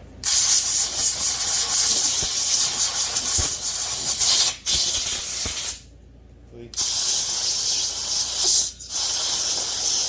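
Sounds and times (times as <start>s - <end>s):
pressurised spray hissing: 6.8s - 10.0s.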